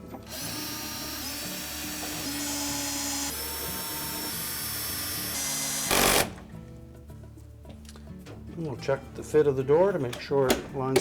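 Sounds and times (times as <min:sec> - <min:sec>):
power driver motor whining: 0:00.2 - 0:06.4.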